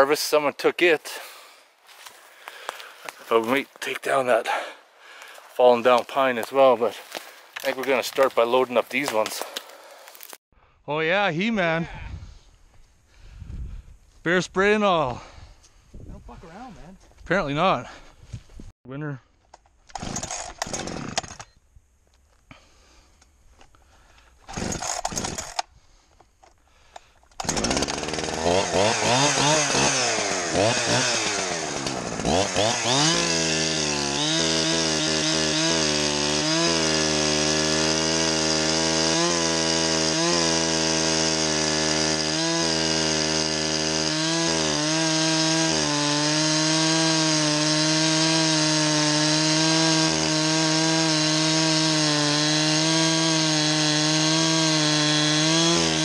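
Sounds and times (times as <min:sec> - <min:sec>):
chainsaw engine revving: 0:19.9 - 0:21.5, 0:24.4 - 0:25.7, 0:27.4 - 0:56.0.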